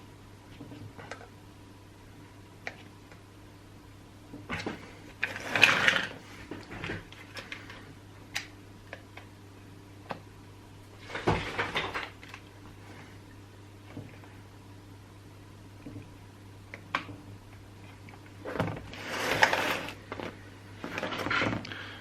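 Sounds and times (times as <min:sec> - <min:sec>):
rattling and scraping: 0:04.5 - 0:07.8.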